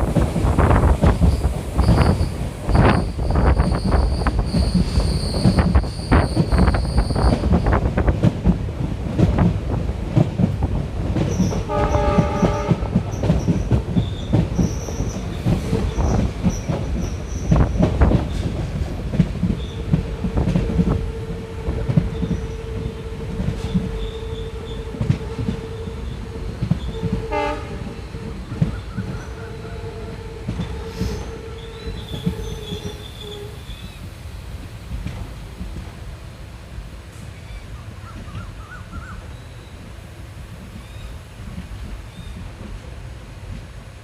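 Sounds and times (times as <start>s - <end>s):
train rumbling: 0.0s - 44.0s
locomotive horn blast: 11.6s - 13.1s, 20.8s - 33.8s.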